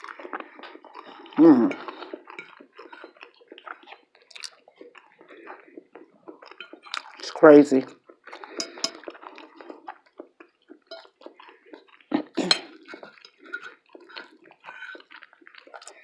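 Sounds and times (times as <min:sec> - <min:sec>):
eating and mouth sounds: 0:00.0 - 0:16.0
fork clinking on a plate: 0:08.6 - 0:09.1, 0:10.9 - 0:11.1, 0:12.4 - 0:15.1.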